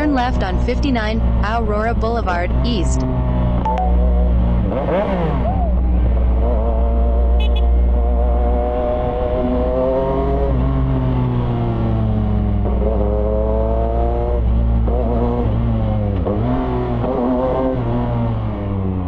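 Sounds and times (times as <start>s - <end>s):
motorcycle engine revving: 0.0s - 19.0s.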